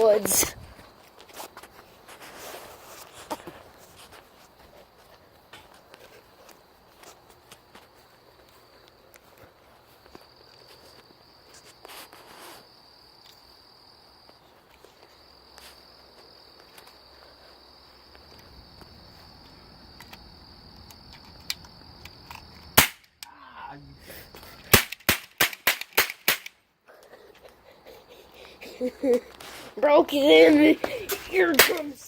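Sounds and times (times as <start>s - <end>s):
footsteps on ground: 0.0s - 12.7s, 28.4s - 32.0s
high insect chirring: 30.1s - 32.0s.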